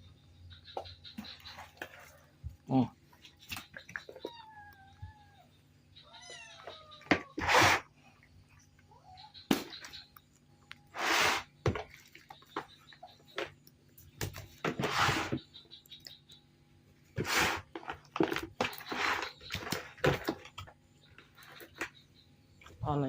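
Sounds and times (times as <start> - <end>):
cat meowing: 4.2 - 7.4.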